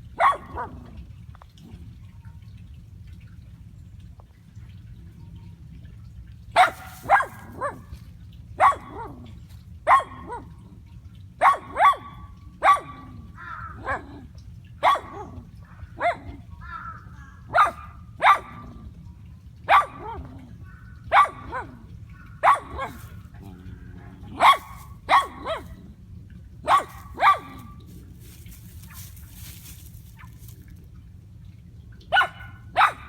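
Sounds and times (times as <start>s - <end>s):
dog barking: 0.1s - 0.9s, 6.6s - 8.0s, 8.6s - 9.2s, 9.9s - 10.6s, 11.4s - 14.2s, 14.8s - 18.7s, 19.7s - 20.3s, 21.0s - 23.2s, 24.3s - 25.8s, 26.6s - 29.5s, 32.1s - 33.0s.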